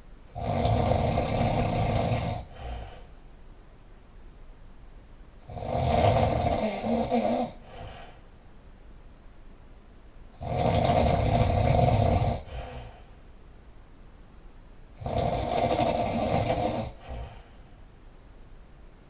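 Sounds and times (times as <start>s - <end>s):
person snoring loudly: 0.3s - 3.1s, 5.4s - 8.2s, 10.3s - 13.0s, 15.0s - 17.5s
soft breath: 1.4s - 3.3s, 6.8s - 8.4s, 11.6s - 13.4s, 15.7s - 18.0s.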